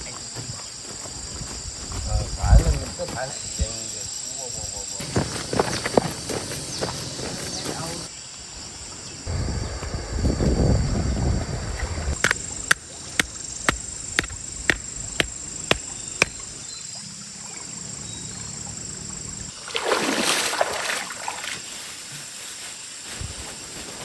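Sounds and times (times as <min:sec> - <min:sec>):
loud splashing water: 0:19.6 - 0:21.4.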